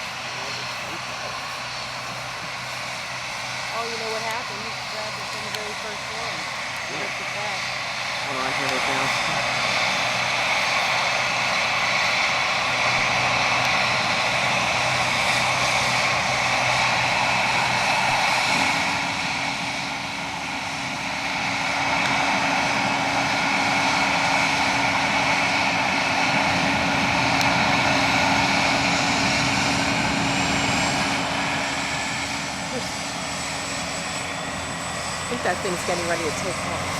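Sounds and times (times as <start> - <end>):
high whine: 0.0 - 25.3
helicopter engine and rotor: 0.0 - 36.9.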